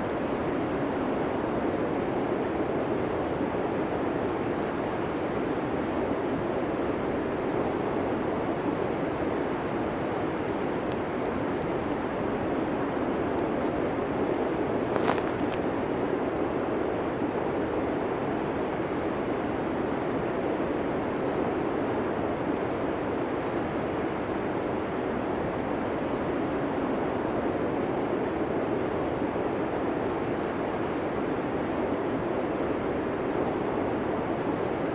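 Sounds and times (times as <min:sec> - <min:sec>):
blizzard wind rushing: 0:00.0 - 0:15.6.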